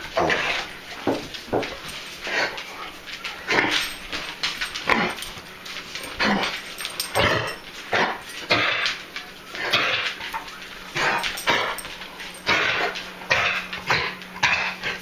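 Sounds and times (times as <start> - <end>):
dog coughing: 11.0 - 15.0.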